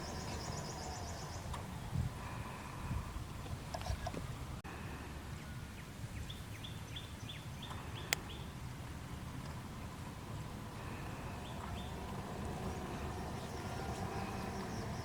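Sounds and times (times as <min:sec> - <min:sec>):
bird chirping: 0:00.0 - 0:01.9, 0:05.4 - 0:08.6, 0:10.8 - 0:15.0.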